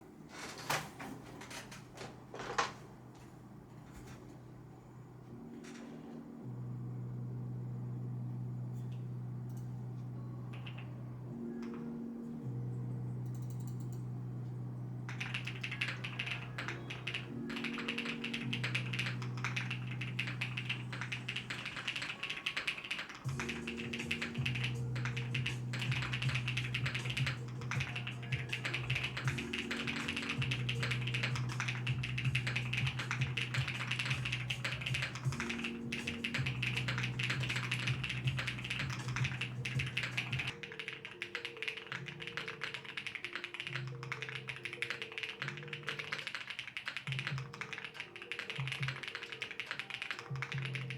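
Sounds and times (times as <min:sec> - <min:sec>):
soft background music: 0:00.0 - 0:50.9
mechanical keyboard typing: 0:10.5 - 0:10.9, 0:15.1 - 0:50.9.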